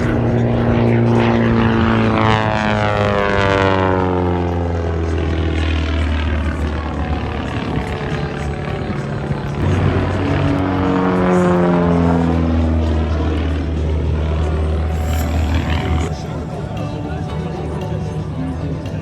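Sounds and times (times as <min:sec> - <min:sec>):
propeller airplane flying past: 0:00.0 - 0:19.0.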